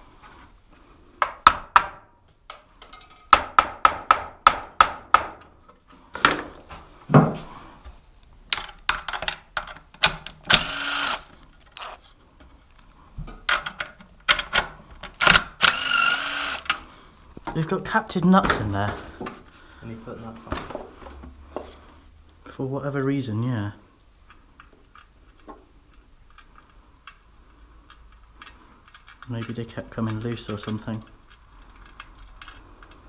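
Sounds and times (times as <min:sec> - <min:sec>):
cordless drill spinning: 0:10.5 - 0:12.0, 0:15.2 - 0:16.8.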